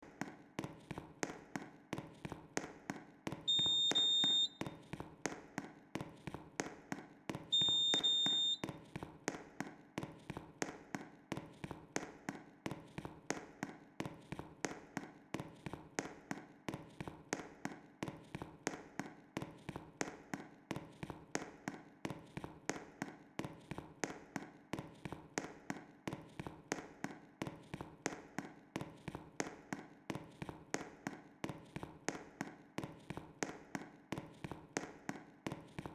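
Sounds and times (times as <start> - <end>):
high electronic beeps: 3.5 - 4.6, 7.6 - 8.6.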